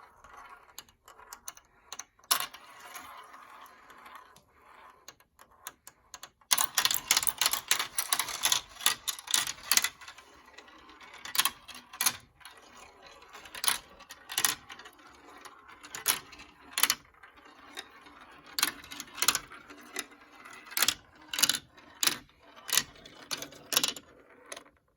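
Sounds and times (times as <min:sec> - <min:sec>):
marbles clattering on marble run: 0:06.5 - 0:24.8.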